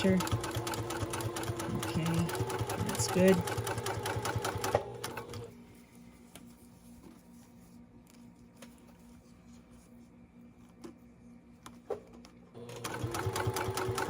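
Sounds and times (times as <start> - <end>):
sewing machine stitching: 0.0 - 5.5, 12.6 - 14.0
clicks and rustles of handling: 5.8 - 10.0.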